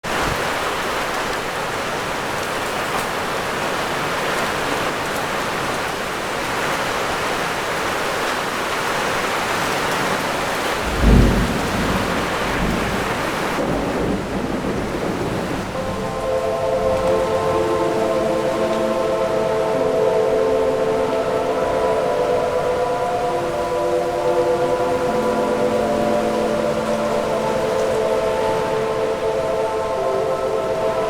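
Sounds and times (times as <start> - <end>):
heavy rain falling: 0.0 - 31.0
low rumble of thunder: 10.8 - 16.2.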